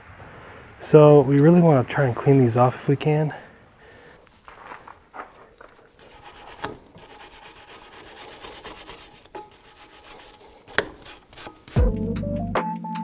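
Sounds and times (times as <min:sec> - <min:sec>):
scrubbing brake parts: 0:00.0 - 0:11.8
knocks: 0:09.3 - 0:11.8.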